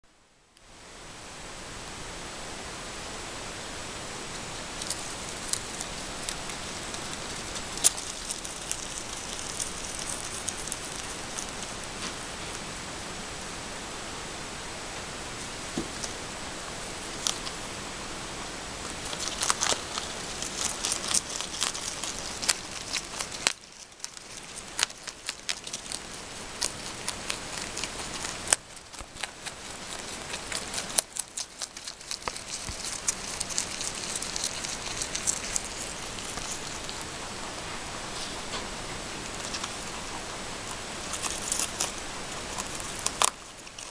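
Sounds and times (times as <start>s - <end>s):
steady hiss: 0.1s - 43.9s
rabbit chewing: 3.8s - 13.5s, 14.9s - 43.9s.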